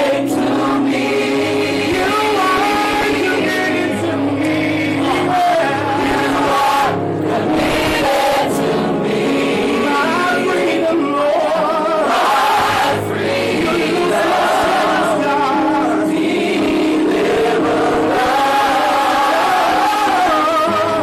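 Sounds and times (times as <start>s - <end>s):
gospel choir singing: 0.0s - 21.0s.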